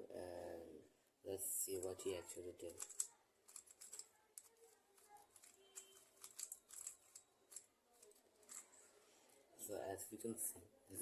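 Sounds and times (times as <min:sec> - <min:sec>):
puzzle cube clicking and rattling: 0:02.6 - 0:08.8.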